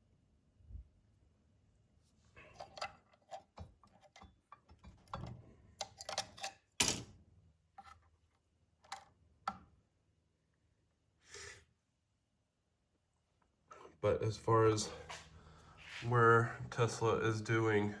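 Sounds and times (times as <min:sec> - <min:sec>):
clicks and knocks from handling: 0:02.4 - 0:07.1.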